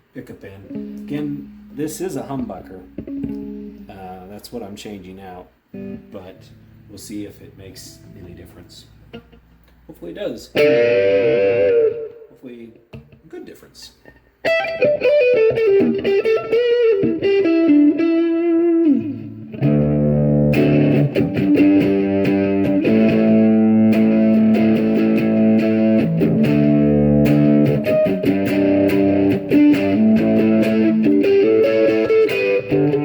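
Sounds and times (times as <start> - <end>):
overdriven electric guitar: 0.7 - 1.8, 2.8 - 3.9, 5.7 - 6.8, 10.5 - 12.3, 14.4 - 33.0.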